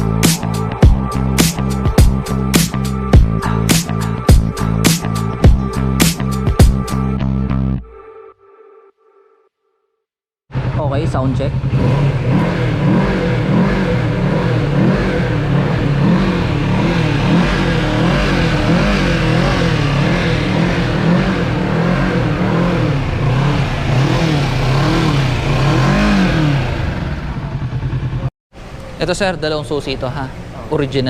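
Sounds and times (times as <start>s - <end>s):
motorcycle engine revving: 10.5s - 28.3s.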